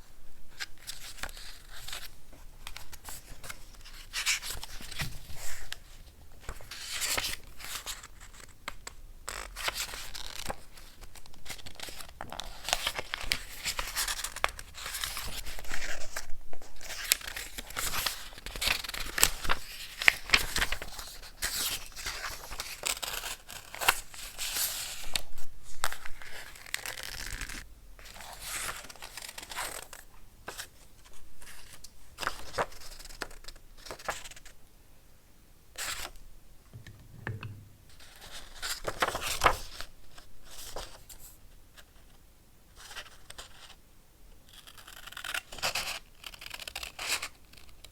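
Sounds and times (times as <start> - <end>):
paper tearing and crinkling: 38.8 - 39.7.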